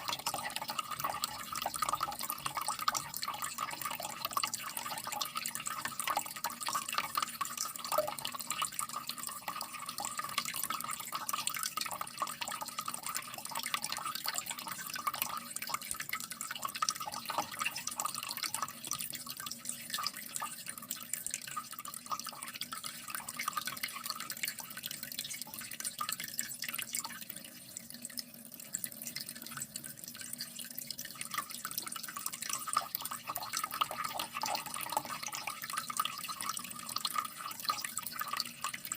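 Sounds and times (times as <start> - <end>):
water dripping and trickling: 0.0 - 38.9.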